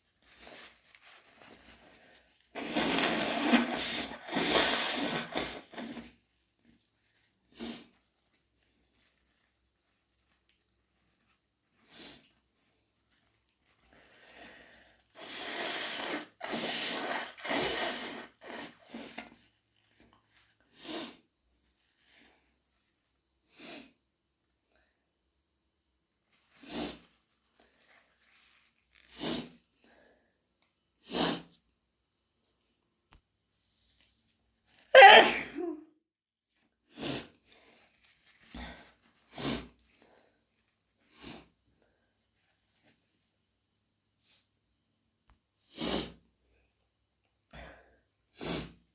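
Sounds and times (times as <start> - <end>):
person blowing nose: 2.5 - 6.1, 15.1 - 19.4, 35.0 - 35.8, 48.4 - 48.8
person sniffing and snorting: 2.5 - 6.2, 14.0 - 19.4, 20.7 - 21.2, 26.6 - 27.2, 29.1 - 29.7, 31.0 - 31.6, 35.0 - 35.7, 36.9 - 37.4, 38.6 - 39.8, 45.7 - 46.2, 48.4 - 48.8
person sneezing: 34.9 - 35.8
person sniffling: 35.0 - 35.8.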